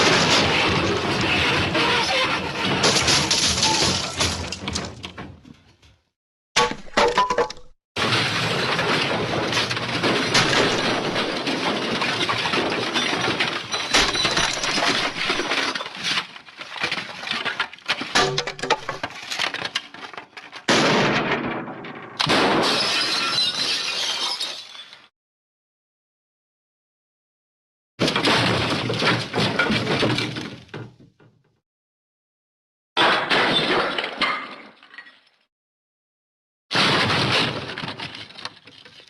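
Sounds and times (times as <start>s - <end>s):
glass and debris smashing: 0.0s - 5.0s, 6.6s - 20.1s, 20.7s - 25.1s.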